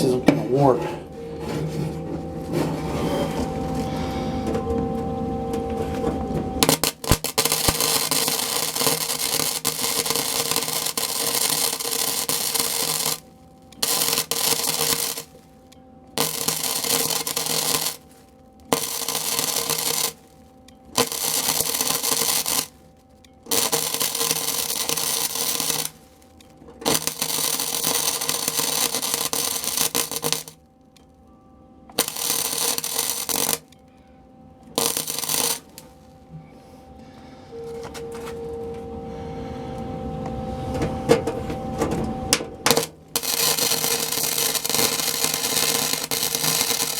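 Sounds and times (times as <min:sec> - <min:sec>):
steady hum: 0:00.0 - 0:46.9
arc welder crackling: 0:02.4 - 0:31.2, 0:31.9 - 0:33.8, 0:34.6 - 0:36.2, 0:42.6 - 0:46.9.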